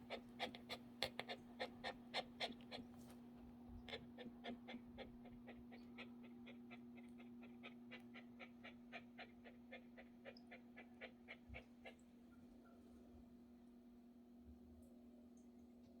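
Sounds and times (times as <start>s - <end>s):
small dog panting: 3.9s - 12.0s.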